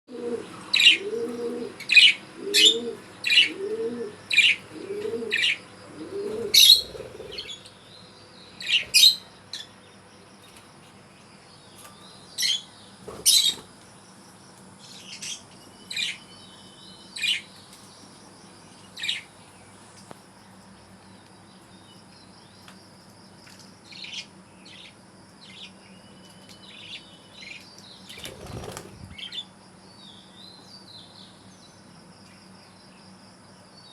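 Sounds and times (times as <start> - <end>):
budgerigars chirping: 5.3 - 7.8, 8.6 - 9.7, 12.4 - 13.7.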